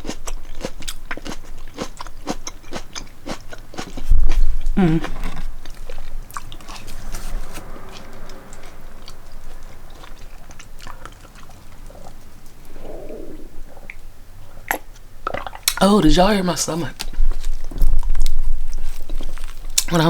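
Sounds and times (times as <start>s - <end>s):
chewing: 0.0s - 15.8s, 17.0s - 19.9s
stomach gurgle: 4.0s - 15.7s.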